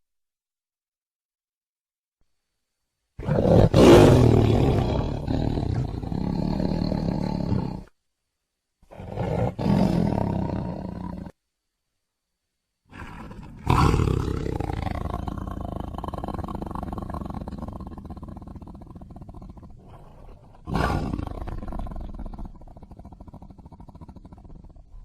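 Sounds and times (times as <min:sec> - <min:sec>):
tiger roaring: 0:03.2 - 0:07.9, 0:08.9 - 0:11.4, 0:12.9 - 0:25.0.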